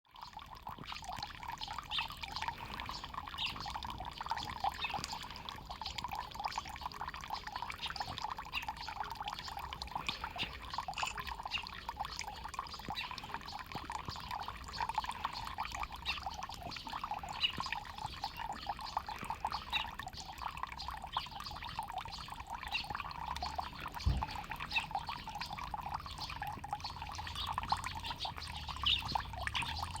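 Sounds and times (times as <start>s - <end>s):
water trickling over stones: 0.0s - 30.0s.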